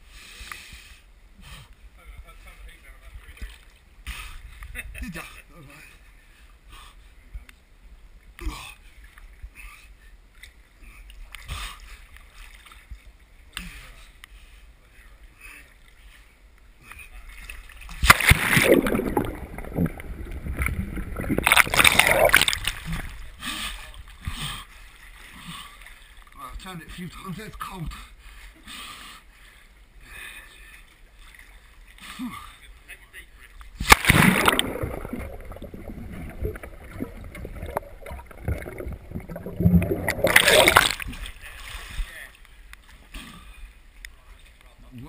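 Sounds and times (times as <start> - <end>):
water splashing and sloshing: 2.6 - 4.8, 8.2 - 14.1, 15.6 - 27.0, 30.5 - 44.8
water splash: 17.4 - 23.7, 33.8 - 42.1.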